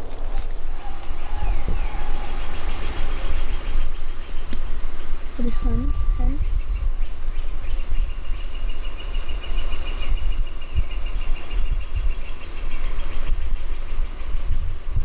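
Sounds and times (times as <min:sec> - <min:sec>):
wind buffeting microphone: 0:00.0 - 0:15.0
high-pitched songbird trill: 0:05.4 - 0:07.1.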